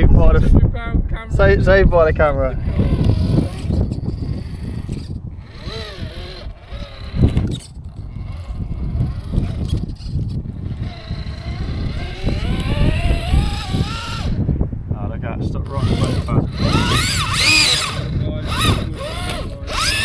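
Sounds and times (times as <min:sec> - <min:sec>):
electric motor whining: 0:02.5 - 0:14.5, 0:15.6 - 0:20.0.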